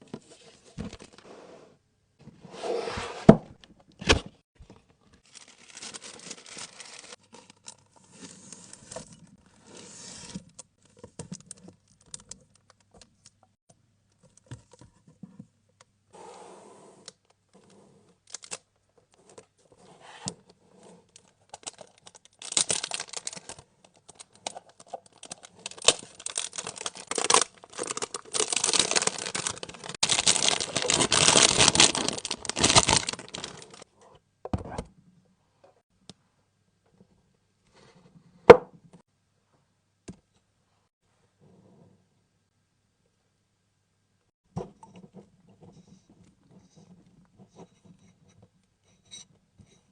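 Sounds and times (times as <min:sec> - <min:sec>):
packaging tearing and crinkling: 0:05.2 - 0:07.6, 0:18.3 - 0:18.6, 0:21.5 - 0:33.8.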